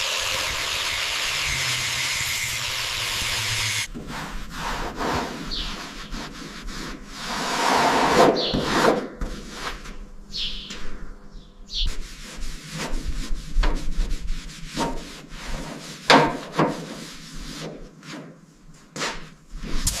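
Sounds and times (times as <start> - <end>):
hand tool rubbing and scraping: 0.0 - 10.0.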